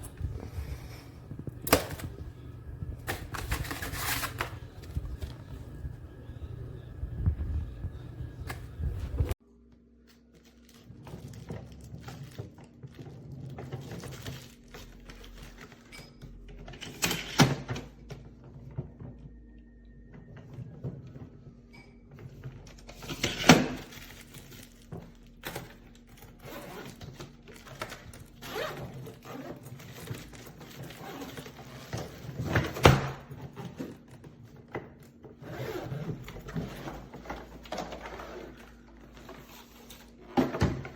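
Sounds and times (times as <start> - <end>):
low hum: 0.0 - 9.4.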